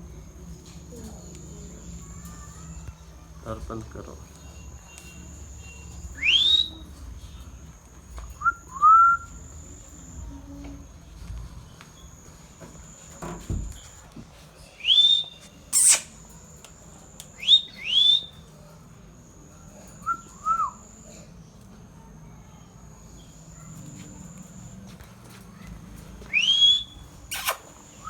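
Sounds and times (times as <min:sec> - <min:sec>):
parrot shrieking: 0:15.8 - 0:16.2, 0:27.3 - 0:27.7.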